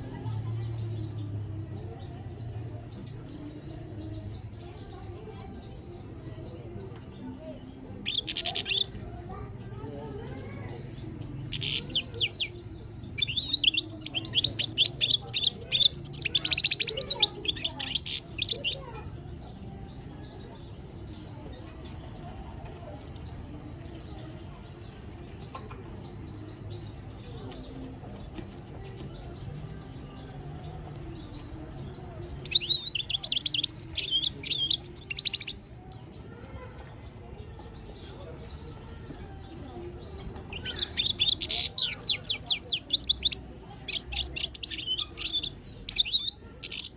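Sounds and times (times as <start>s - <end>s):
bird twittering song: 7.6s - 9.0s, 10.9s - 18.8s, 32.4s - 36.1s, 40.0s - 46.9s.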